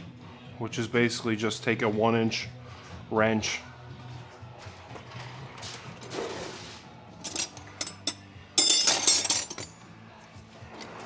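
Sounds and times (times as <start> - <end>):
metal hand tools clinking: 7.2 - 9.9.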